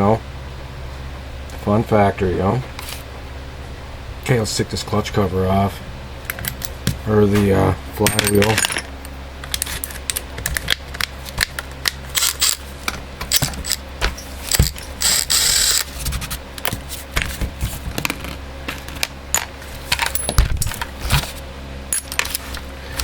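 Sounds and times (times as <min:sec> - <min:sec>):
steady low hum: 0:00.0 - 0:23.0
metal tools clinking and tapping: 0:08.0 - 0:10.2, 0:19.4 - 0:20.8, 0:21.9 - 0:22.6.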